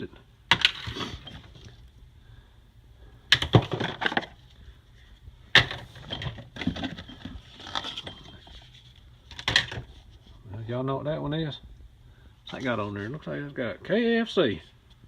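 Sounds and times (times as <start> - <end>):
plastic containers clattering: 0.5 - 1.8, 3.3 - 4.4, 5.5 - 8.7, 9.3 - 10.0.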